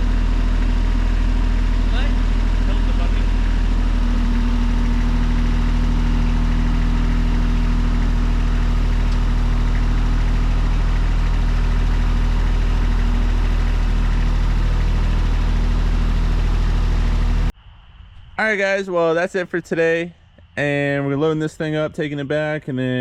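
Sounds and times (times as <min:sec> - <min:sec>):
engine idling: 0:00.0 - 0:17.6.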